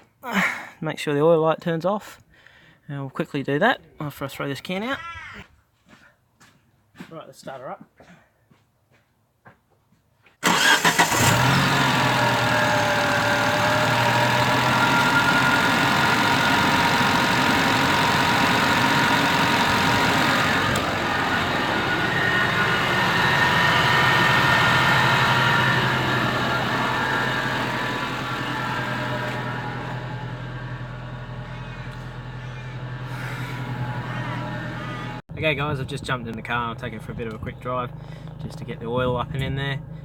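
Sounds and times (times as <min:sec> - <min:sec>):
car engine idling and spluttering: 0:10.5 - 0:35.2, 0:36.8 - 0:40.0.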